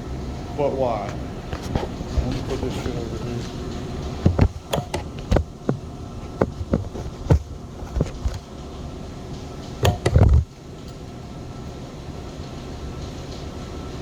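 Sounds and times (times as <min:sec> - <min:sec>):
low mechanical hum: 0:00.0 - 0:14.0
objects knocking and clunking: 0:04.2 - 0:08.5, 0:09.8 - 0:10.5.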